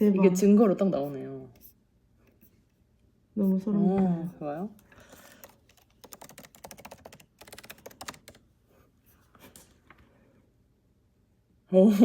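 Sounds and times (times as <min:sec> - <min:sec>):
computer keyboard typing: 0:04.6 - 0:08.4.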